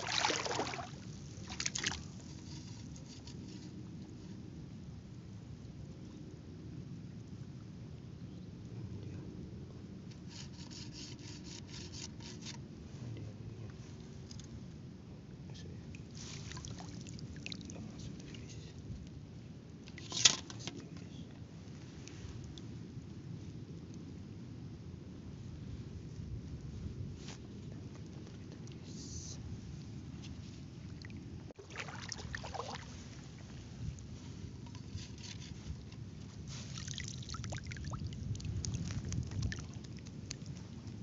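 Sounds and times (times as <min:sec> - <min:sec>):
water splashing and sloshing: 0:00.0 - 0:03.7, 0:16.0 - 0:18.3, 0:30.2 - 0:41.0
low steady background: 0:00.0 - 0:41.0.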